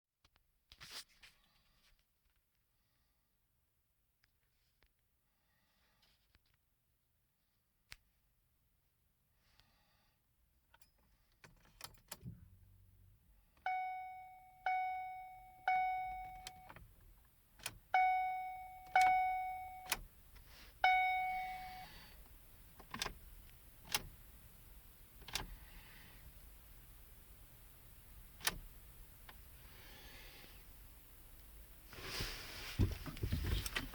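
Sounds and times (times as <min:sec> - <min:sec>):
car warning chime dinging: 0:13.6 - 0:16.9, 0:17.6 - 0:20.1, 0:20.8 - 0:22.0.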